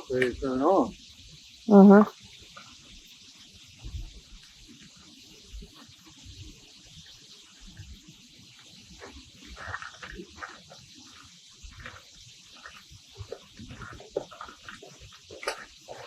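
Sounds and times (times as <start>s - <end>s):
insects droning: 0.0s - 16.0s
water sloshing: 9.0s - 16.0s.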